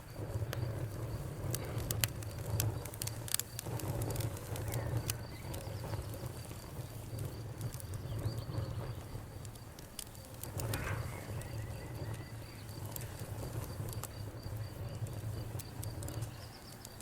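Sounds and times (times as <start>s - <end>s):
low steady rumble: 0.0s - 16.8s
cricket chirping: 0.0s - 17.0s
fire pops: 0.0s - 17.0s
wood fire crackling: 0.0s - 17.0s.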